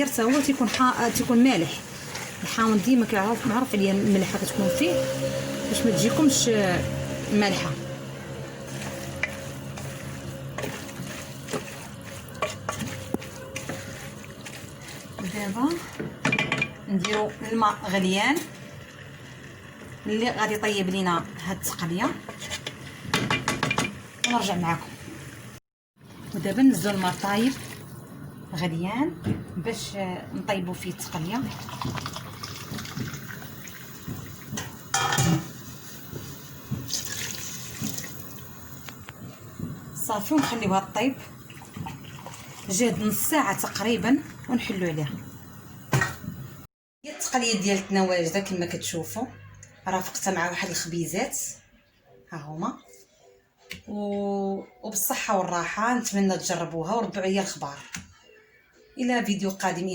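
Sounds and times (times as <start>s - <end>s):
spoon scraping a pot: 0.0s - 17.5s, 21.7s - 24.4s
water pouring into pot: 26.0s - 28.2s, 31.0s - 39.0s, 41.1s - 44.6s
pot clattering: 31.5s - 35.6s.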